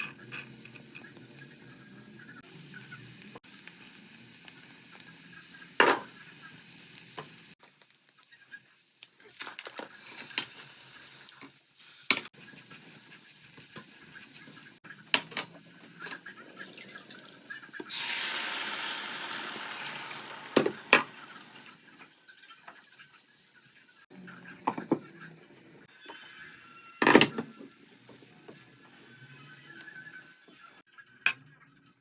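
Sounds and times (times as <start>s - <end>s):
food sizzling in a pan: 0.0s - 31.3s
water pouring: 16.5s - 21.6s.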